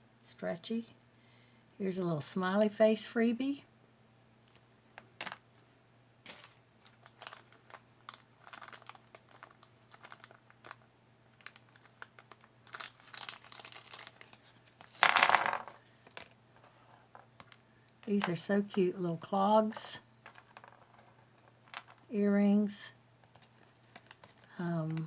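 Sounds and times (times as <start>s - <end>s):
jewelry crinkling rustles: 4.5s - 18.9s, 19.6s - 25.0s.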